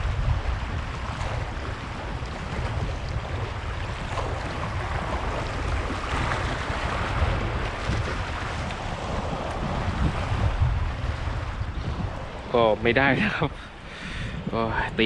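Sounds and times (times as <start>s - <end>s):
sea waves washing on shore: 0.0s - 15.0s
wind buffeting microphone: 0.0s - 15.0s.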